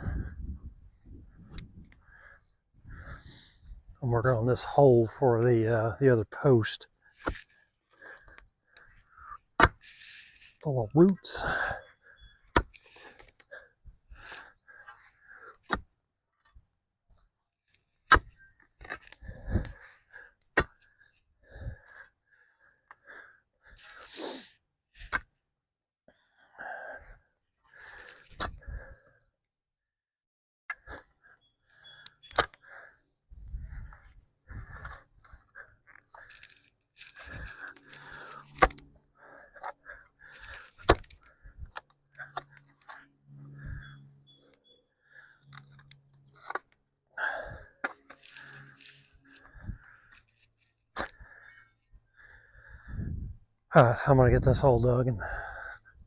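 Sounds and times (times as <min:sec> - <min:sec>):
scraping and crunching of soil: 0:07.0 - 0:07.7, 0:08.9 - 0:11.2, 0:27.7 - 0:28.5, 0:33.6 - 0:44.1, 0:47.4 - 0:51.7
digging tool striking roots: 0:18.1 - 0:18.4, 0:37.0 - 0:38.9, 0:40.4 - 0:41.2.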